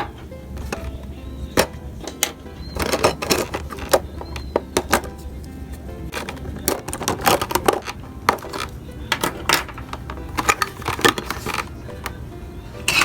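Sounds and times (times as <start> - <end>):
plastic toy pieces clicking: 1.6 - 5.1, 6.1 - 12.2.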